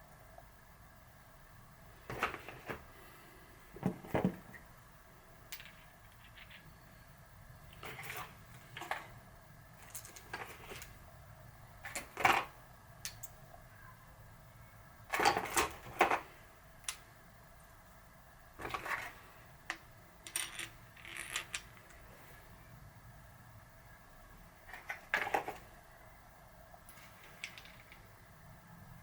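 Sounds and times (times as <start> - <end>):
metal parts clicking and clinking: 5.5 - 6.9, 9.8 - 11.0, 11.8 - 13.4, 18.6 - 22.0, 26.9 - 28.1.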